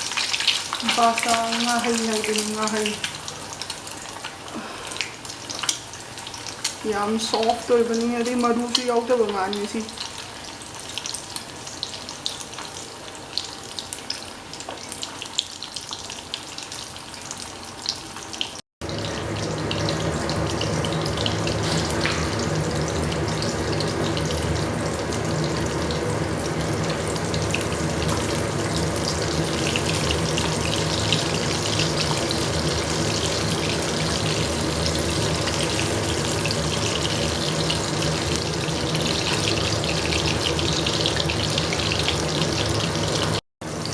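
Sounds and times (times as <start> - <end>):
fish deep-frying in oil: 0.0 - 43.9.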